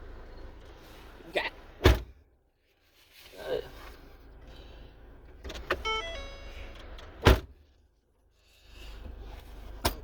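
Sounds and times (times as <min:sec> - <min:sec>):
stepped beeping tone: 0:05.8 - 0:07.0.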